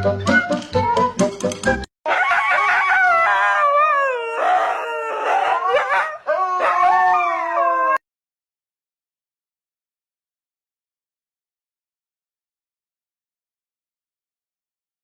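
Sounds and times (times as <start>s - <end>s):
dog howling: 2.1s - 8.0s.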